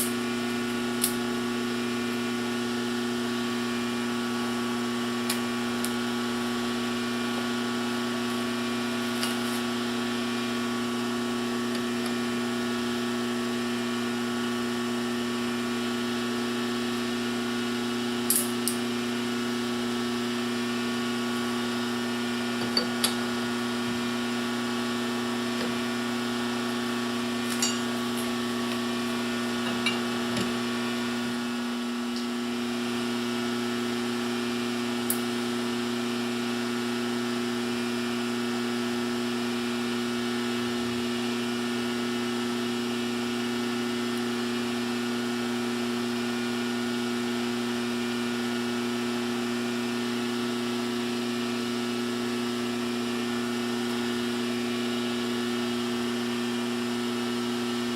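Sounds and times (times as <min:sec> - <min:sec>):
metal lathe motor humming: 0:00.0 - 0:17.4, 0:20.2 - 0:32.3.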